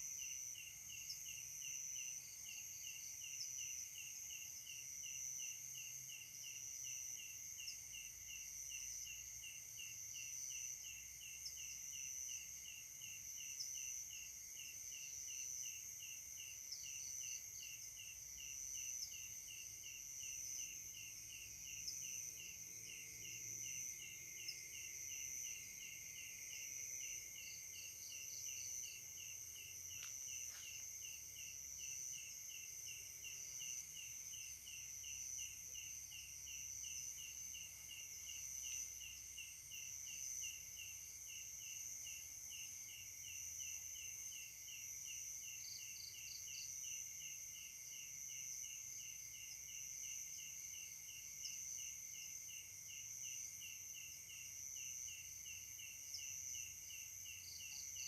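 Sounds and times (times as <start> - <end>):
insect chirp pulsing: 0.0 - 58.0
insect chorus ringing: 0.0 - 58.0.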